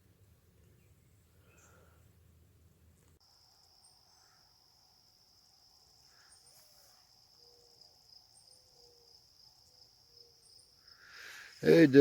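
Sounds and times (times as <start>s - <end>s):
high-pitched insect trill: 3.2s - 12.0s.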